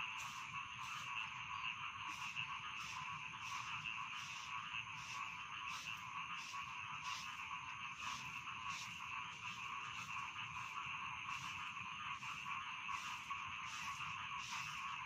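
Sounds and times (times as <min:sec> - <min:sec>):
chorus of frogs croaking: 0:00.0 - 0:15.0.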